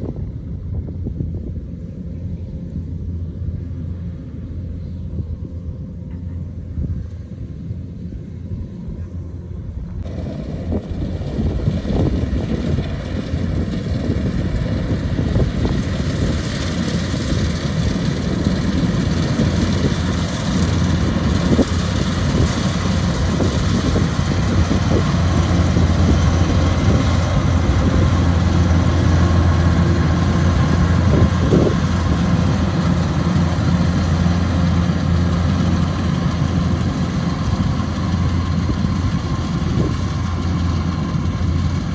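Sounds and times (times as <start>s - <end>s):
diesel engine running under load: 0.0s - 41.9s.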